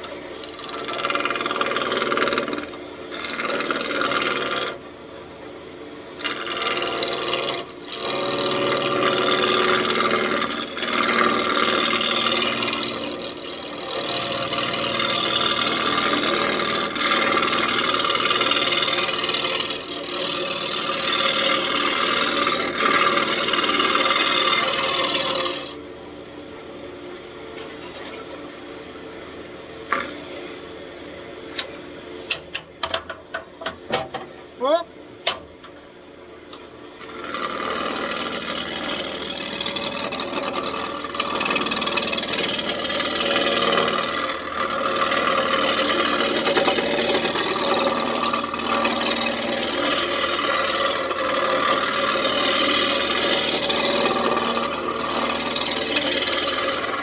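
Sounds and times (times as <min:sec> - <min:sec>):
lathe gouge scraping wood: 0:00.4 - 0:04.8, 0:06.2 - 0:25.8, 0:37.0 - 0:57.0.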